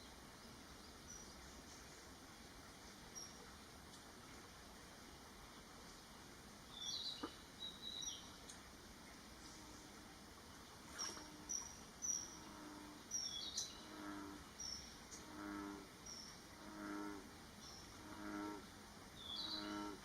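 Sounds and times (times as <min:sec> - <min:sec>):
high thin whistled bird calls: 0:06.7 - 0:08.3, 0:10.9 - 0:12.4.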